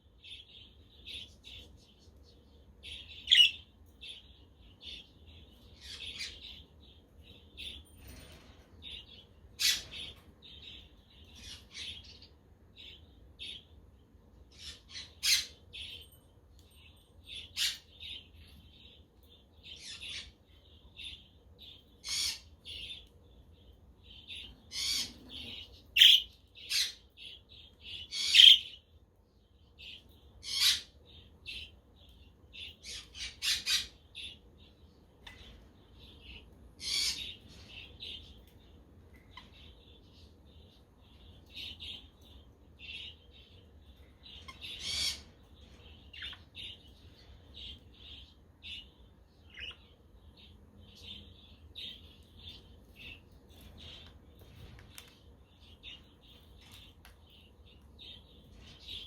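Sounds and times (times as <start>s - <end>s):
budgerigars chirping and chattering: 2.8s - 8.2s, 8.9s - 13.7s, 14.5s - 16.0s, 18.9s - 28.9s, 29.8s - 38.6s, 39.2s - 59.0s
sharp bird calls: 24.4s - 27.0s, 28.1s - 28.8s.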